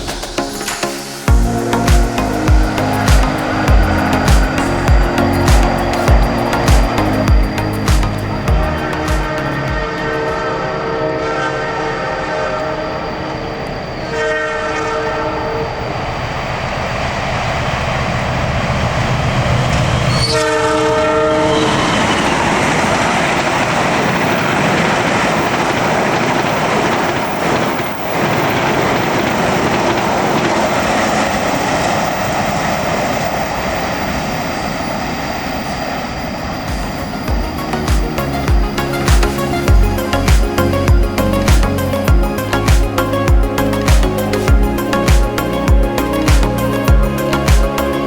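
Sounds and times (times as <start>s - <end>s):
train wheels clattering on rails: 0.0s - 10.8s, 16.6s - 34.3s
locomotive horn blasts: 8.7s - 13.1s, 14.1s - 15.7s, 20.1s - 21.8s.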